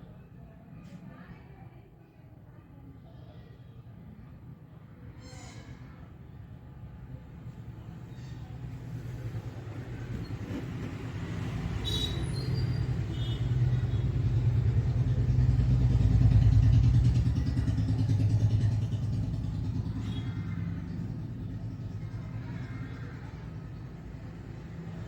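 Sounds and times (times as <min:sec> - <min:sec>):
vehicle engine passing by: 0:10.6 - 0:25.0.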